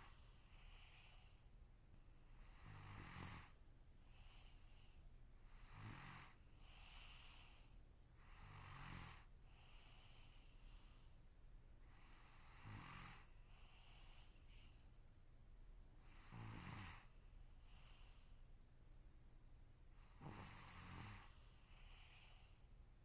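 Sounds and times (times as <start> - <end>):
person snoring: 2.4 - 3.6, 5.5 - 7.6, 8.2 - 10.1, 12.1 - 14.2, 16.1 - 17.1, 20.1 - 22.5
breathy hiss: 21.1 - 22.7.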